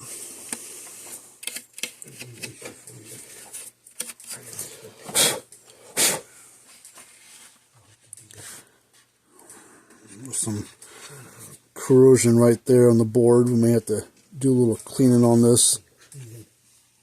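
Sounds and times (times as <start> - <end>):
plastic case clicks and rustles: 1.4 - 2.8.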